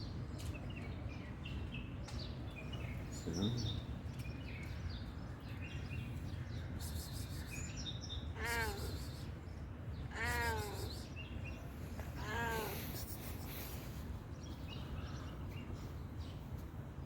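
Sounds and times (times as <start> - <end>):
small birds chirping: 0.0 - 17.0
cat meowing: 8.3 - 9.0, 10.1 - 11.0, 12.1 - 13.0.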